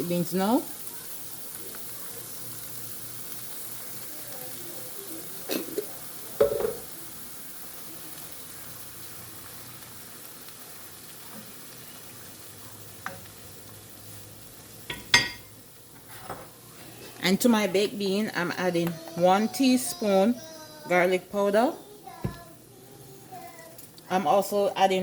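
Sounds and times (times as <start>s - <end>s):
onion sizzling in grease: 0.0s - 25.0s
knocks on pot: 6.4s - 6.8s.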